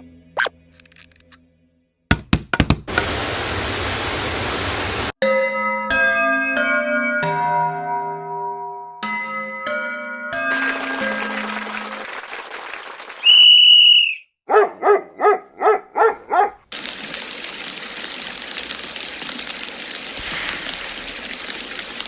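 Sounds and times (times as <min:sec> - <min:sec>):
short high whistle: 0:13.2 - 0:14.3
dog-like yaps: 0:14.5 - 0:16.6
hissing rattle: 0:20.2 - 0:22.0.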